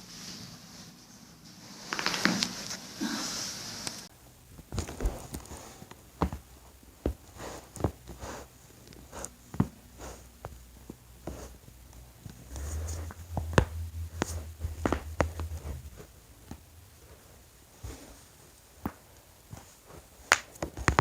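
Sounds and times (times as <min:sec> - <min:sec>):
low rubbing rumble: 0:10.6 - 0:18.8.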